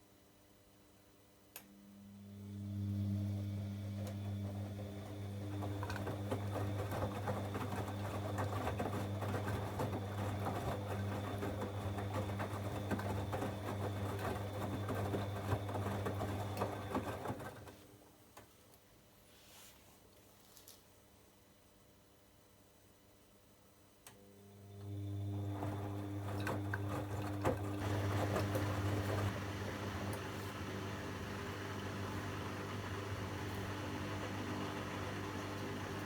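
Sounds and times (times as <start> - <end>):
washing machine motor humming: 1.8 - 17.9, 24.2 - 36.0
laundry tumbling in drum: 4.4 - 17.8, 25.4 - 30.0.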